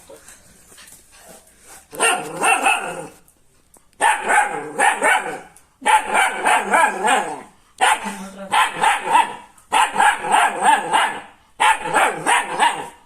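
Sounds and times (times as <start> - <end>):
dog barking: 1.9 - 3.1, 4.0 - 13.0.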